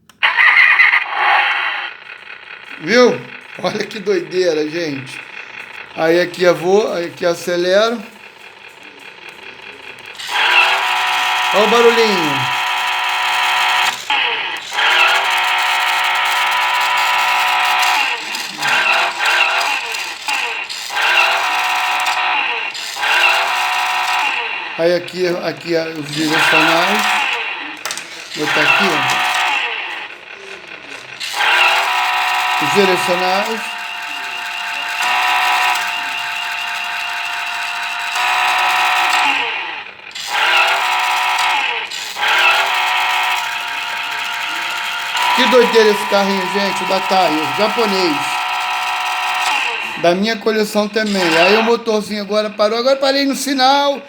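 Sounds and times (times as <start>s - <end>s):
synthesized toy car engine revving: 0.0s - 54.0s.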